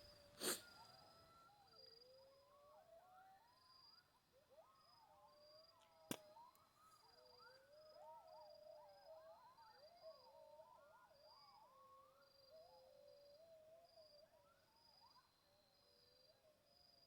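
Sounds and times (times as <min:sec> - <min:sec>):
coyote pack howling and yipping: 0:07.4 - 0:13.5.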